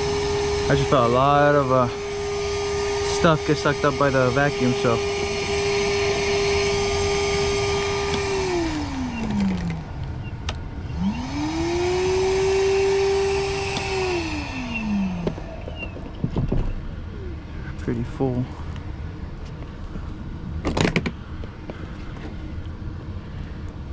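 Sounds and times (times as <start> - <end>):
vacuum sucking water: 0.0 - 16.0
vacuum motor whine: 0.0 - 17.5.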